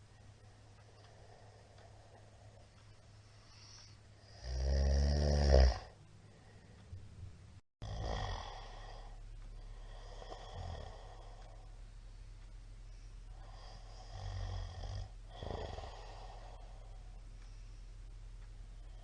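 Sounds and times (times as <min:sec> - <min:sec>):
man snoring: 0:03.5 - 0:06.0, 0:07.8 - 0:11.6, 0:13.3 - 0:16.9.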